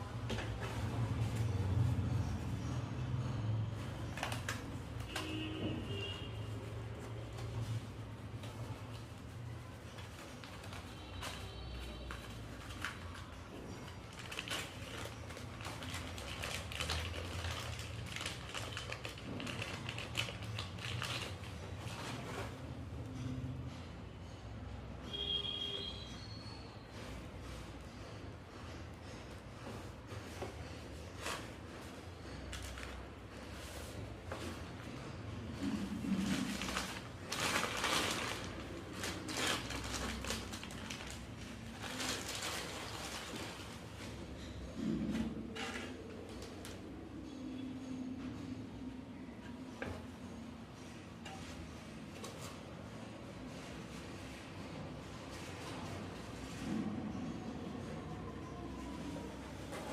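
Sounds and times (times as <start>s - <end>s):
packaging clicks taps and rustles: 4.0s - 6.0s, 9.9s - 22.5s, 36.2s - 43.8s.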